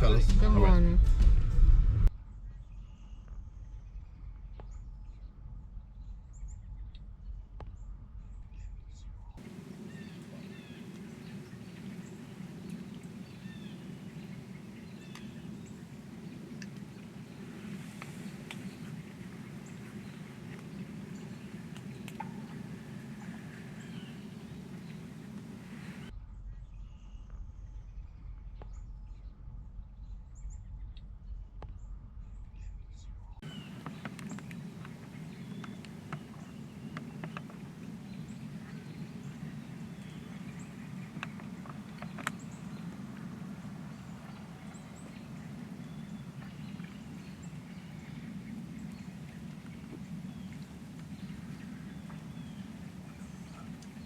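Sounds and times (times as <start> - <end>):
low background rumble: 0.0 - 54.0
faint bird chirps: 9.4 - 28.0, 33.4 - 54.0
small clicks or rustles: 33.5 - 38.6.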